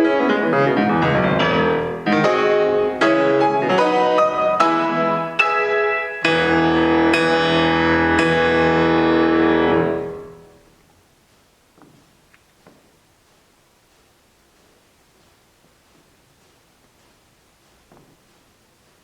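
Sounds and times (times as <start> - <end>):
solo piano: 0.0 - 10.7
faint clicks: 10.9 - 18.5.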